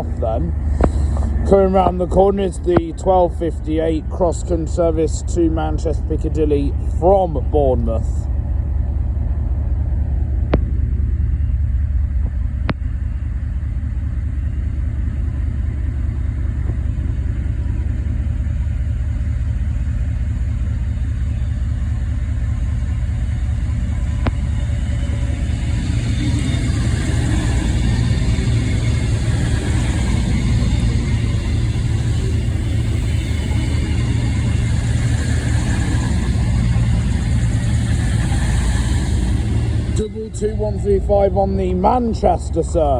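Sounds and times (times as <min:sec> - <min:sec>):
diesel train rumble: 0:00.0 - 0:42.9.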